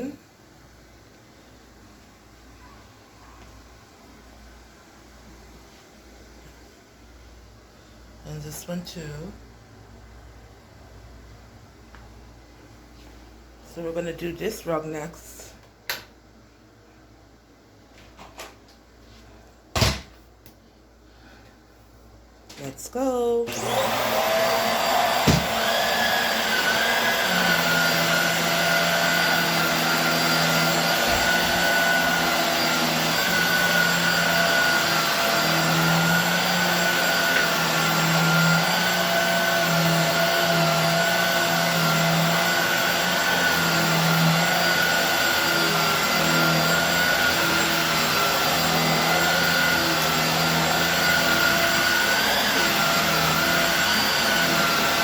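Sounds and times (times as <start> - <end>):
vacuum cleaner running over rug: 23.5 - 55.0.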